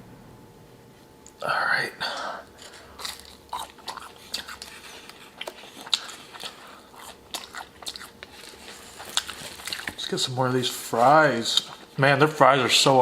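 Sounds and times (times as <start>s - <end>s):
person chewing food: 2.1s - 12.0s.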